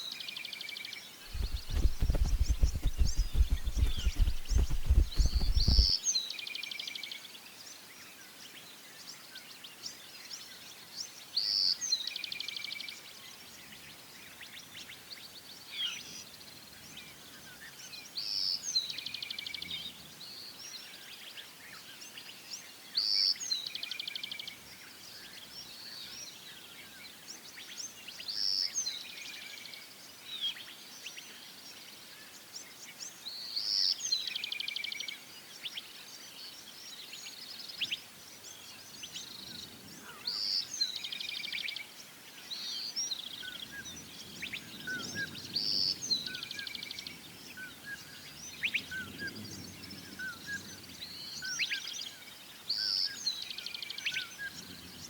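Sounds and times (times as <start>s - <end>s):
faint low rumble: 1.3s - 5.9s
soft bird chirps: 1.3s - 5.9s.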